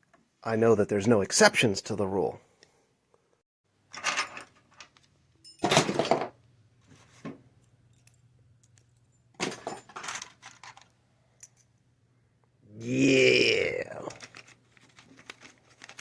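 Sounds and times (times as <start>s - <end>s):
small metal parts clinking: 7.6s - 11.7s.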